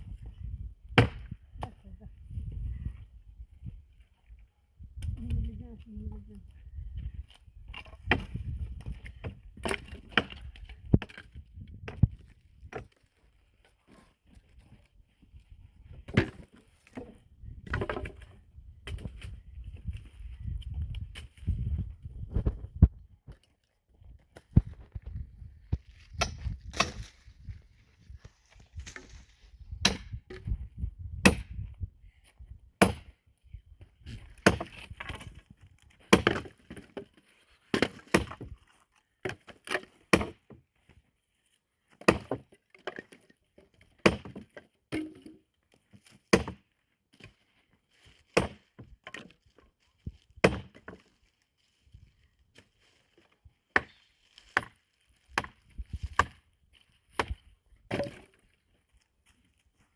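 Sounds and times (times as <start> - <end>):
axe chopping firewood: 0.9 - 1.8, 7.7 - 13.0, 16.1 - 19.3, 26.0 - 27.2, 29.8 - 31.6, 32.8 - 33.2, 34.1 - 35.4, 36.0 - 38.6, 39.2 - 40.6, 42.0 - 43.2, 43.8 - 45.4, 46.0 - 47.3, 48.2 - 49.4, 50.4 - 51.1, 53.7 - 56.4, 57.1 - 58.5.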